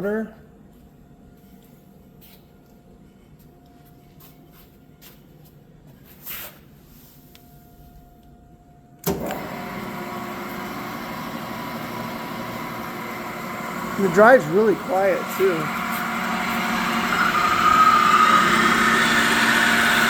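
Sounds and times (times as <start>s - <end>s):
mill motor running: 9.0s - 20.0s
motor starting clunk: 9.0s - 20.0s.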